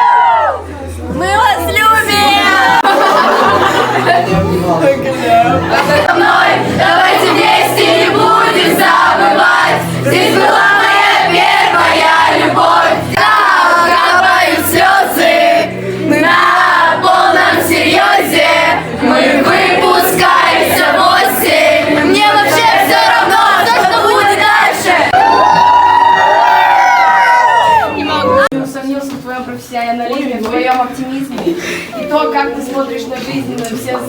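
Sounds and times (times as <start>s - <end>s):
loud music: 0.0s - 28.5s
crowd singing along: 2.2s - 25.2s.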